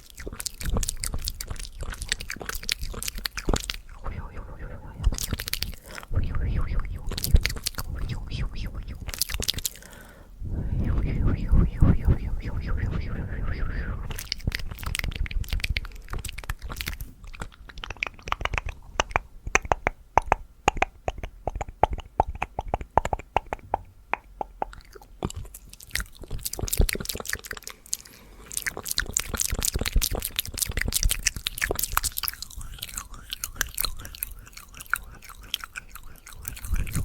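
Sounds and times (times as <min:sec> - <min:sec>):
wet mouth clicks and tongue smacks: 0:00.0 - 0:10.0, 0:13.6 - 0:37.0
hollow pitched mouth pops: 0:10.8 - 0:25.5.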